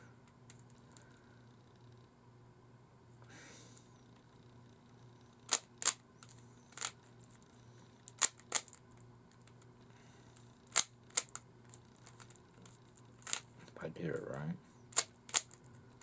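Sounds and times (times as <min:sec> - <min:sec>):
plastic puzzle cube clicking: 0:06.8 - 0:07.0, 0:08.1 - 0:08.8, 0:13.2 - 0:13.4, 0:14.9 - 0:15.6.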